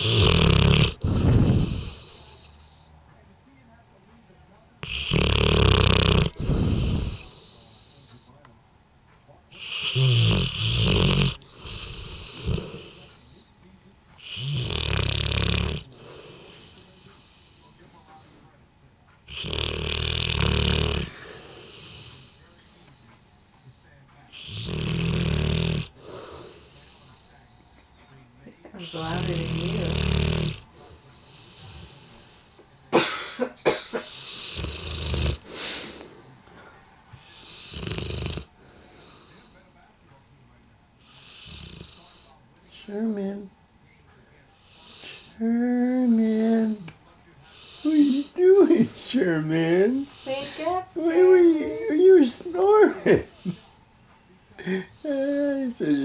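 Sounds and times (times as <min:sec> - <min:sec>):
dog snoring with low rattle: 0:00.0 - 0:02.2, 0:04.8 - 0:07.3, 0:09.6 - 0:13.0, 0:14.2 - 0:15.9, 0:19.3 - 0:22.2, 0:24.4 - 0:25.9, 0:28.8 - 0:30.6, 0:34.2 - 0:35.4, 0:37.4 - 0:38.5
dog snorting: 0:00.0 - 0:02.8, 0:04.8 - 0:08.2, 0:09.5 - 0:13.4, 0:14.2 - 0:18.2, 0:19.3 - 0:23.2, 0:24.3 - 0:27.5, 0:28.8 - 0:33.1, 0:33.7 - 0:36.3, 0:37.1 - 0:39.6, 0:41.0 - 0:42.3, 0:44.6 - 0:51.2
soft dog breath: 0:00.9 - 0:03.2, 0:06.3 - 0:08.5, 0:11.4 - 0:14.4, 0:25.8 - 0:30.0, 0:34.2 - 0:42.9, 0:46.4 - 0:54.3.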